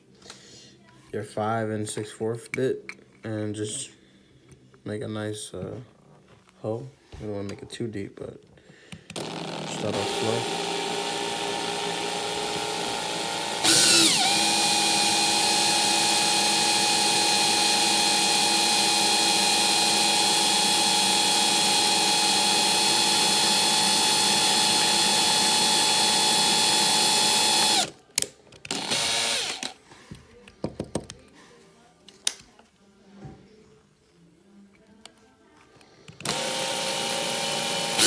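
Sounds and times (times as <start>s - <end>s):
power drill whining: 9.1s - 28.0s, 28.7s - 29.8s, 36.2s - 38.0s.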